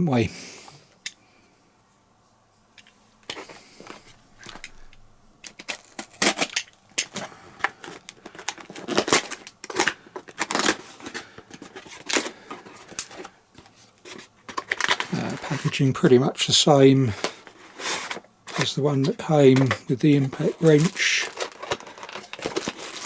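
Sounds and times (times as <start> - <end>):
cardboard box and packaging opened: 5.5 - 15.9, 17.2 - 23.0.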